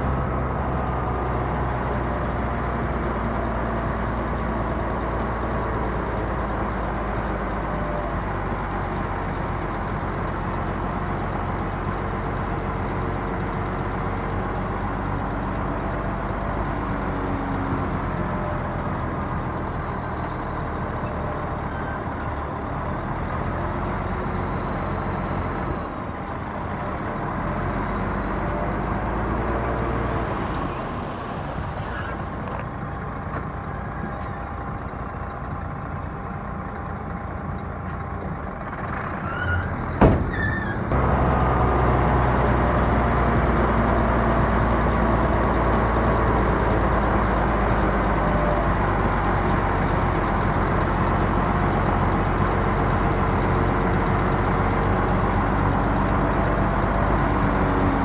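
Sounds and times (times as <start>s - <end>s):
heavy diesel machinery running: 0.0s - 58.0s.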